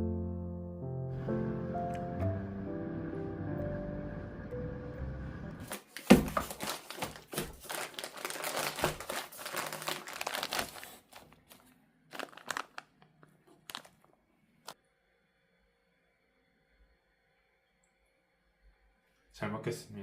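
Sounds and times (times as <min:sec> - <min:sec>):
plastic packaging crinkling: 0:05.7 - 0:14.8.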